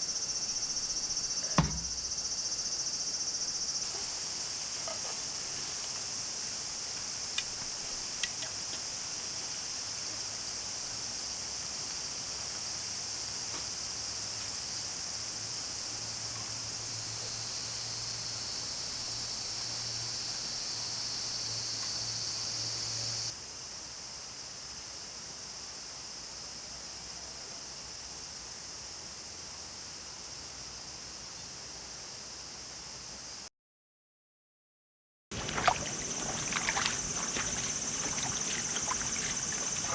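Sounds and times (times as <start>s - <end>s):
insects chirring: 0.0s - 24.7s, 35.4s - 39.9s.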